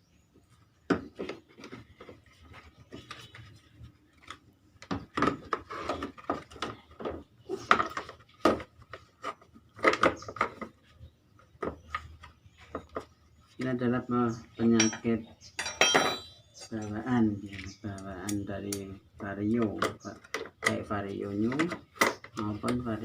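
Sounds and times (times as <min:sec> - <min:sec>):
plastic cover clicking and scraping: 0:04.1 - 0:10.9.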